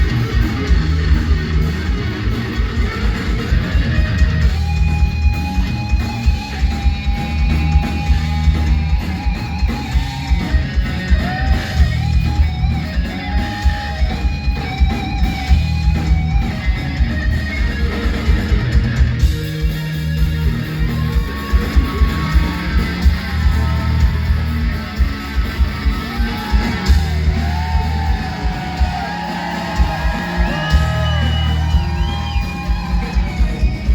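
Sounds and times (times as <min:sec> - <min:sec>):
electric guitar solo: 0:00.0 - 0:33.9
pounding drum and bass rhythm: 0:00.0 - 0:33.9.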